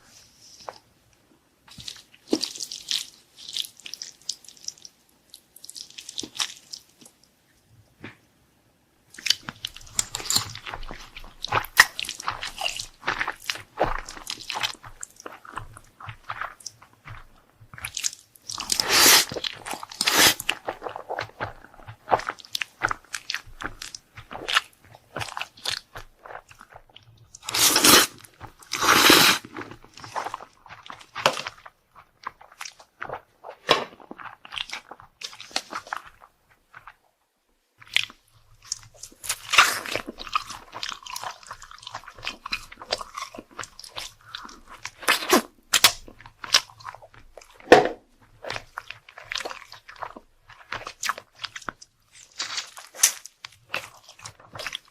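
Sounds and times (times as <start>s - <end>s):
person chewing crunchy food: 1.7s - 7.2s, 9.1s - 37.0s, 37.8s - 54.9s.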